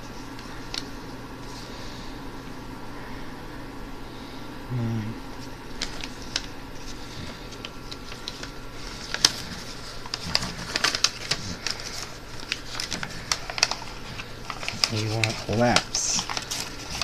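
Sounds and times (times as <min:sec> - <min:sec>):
paper crinkling: 0:00.0 - 0:01.8, 0:05.3 - 0:17.0.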